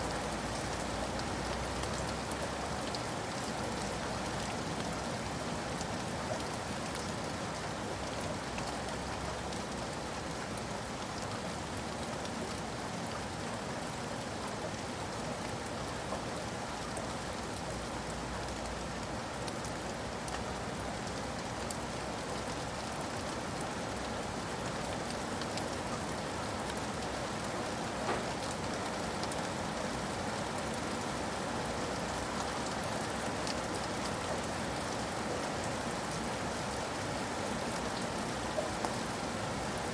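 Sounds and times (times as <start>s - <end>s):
steady rain hiss: 0.0s - 39.9s
raindrops ticking: 24.0s - 35.2s.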